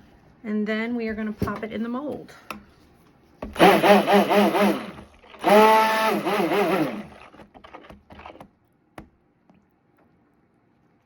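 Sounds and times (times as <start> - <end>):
stick blender motor whine: 3.6 - 8.5.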